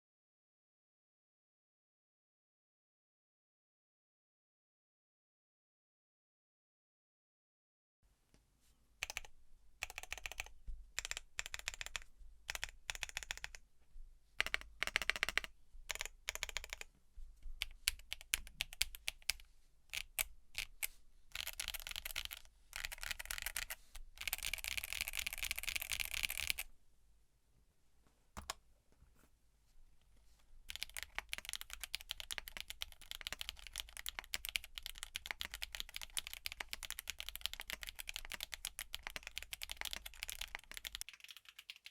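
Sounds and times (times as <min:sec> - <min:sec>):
typing on mechanical keyboard: 0:09.0 - 0:13.6, 0:14.4 - 0:16.9, 0:17.6 - 0:26.7, 0:30.7 - 0:41.9.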